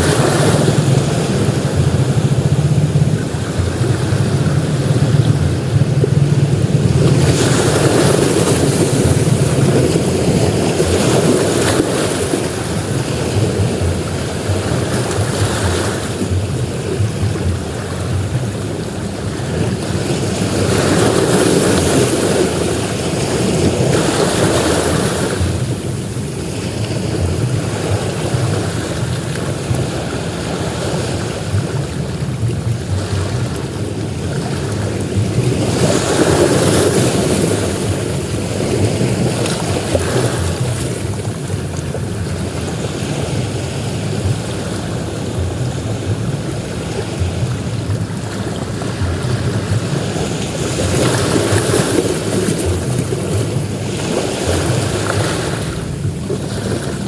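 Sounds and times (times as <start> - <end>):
constant low rumble: 0.0 - 57.0
surf breaking on a beach: 0.0 - 57.0.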